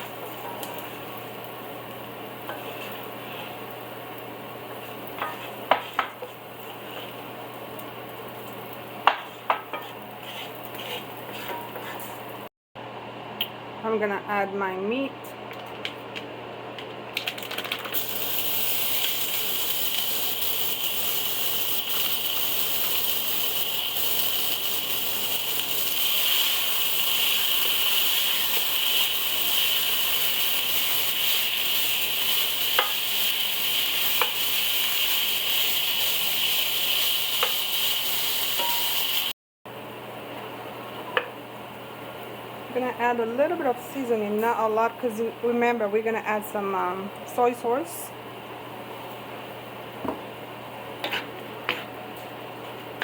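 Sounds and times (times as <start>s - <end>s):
meat sizzling in a pan: 18.0s - 39.4s.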